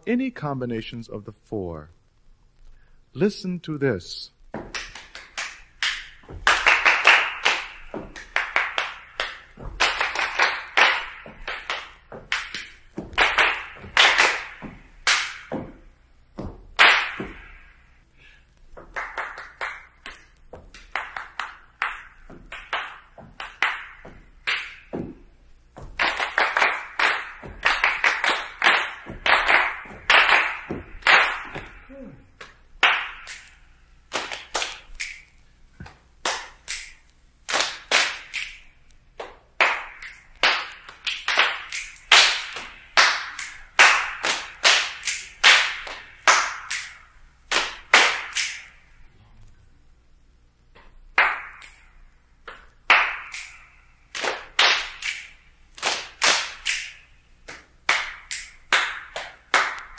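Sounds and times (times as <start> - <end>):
foot stamps: 4.4 - 5.0, 6.2 - 6.6, 7.7 - 8.6, 9.4 - 17.6, 18.6 - 19.1, 20.2 - 21.0, 22.2 - 31.9
hand claps: 4.5 - 15.8, 16.4 - 17.7, 18.8 - 48.8, 50.7 - 59.9
thigh slaps: 4.5 - 17.7, 18.7 - 48.8
finger snaps: 34.6 - 36.0, 36.6 - 37.1.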